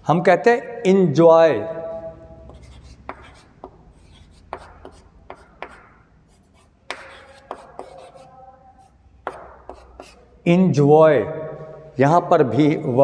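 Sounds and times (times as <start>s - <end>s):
pen scratching while writing: 2.5s - 10.2s.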